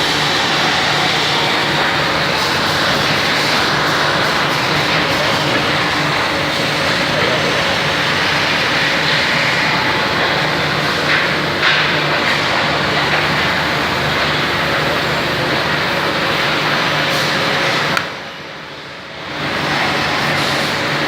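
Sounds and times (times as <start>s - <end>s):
machine hissing and humming: 0.0s - 21.0s.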